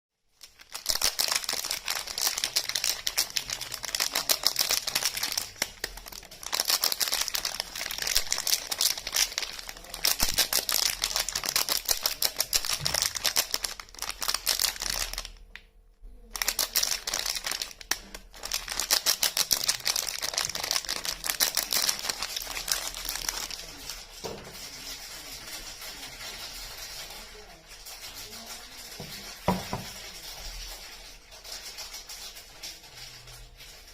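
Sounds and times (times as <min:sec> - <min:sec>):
packaging crinkling and rustling: 0:00.3 - 0:15.6, 0:16.3 - 0:33.9.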